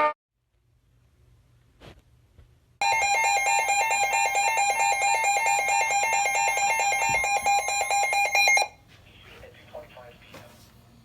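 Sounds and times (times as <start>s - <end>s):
two-tone alert signal: 2.8s - 8.7s.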